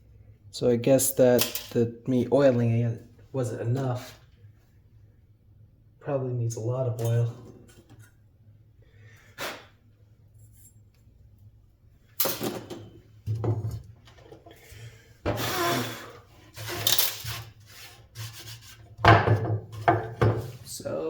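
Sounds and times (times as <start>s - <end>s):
scraping rub: 15.4s - 19.0s
tools clattering on work surface: 19.0s - 20.6s.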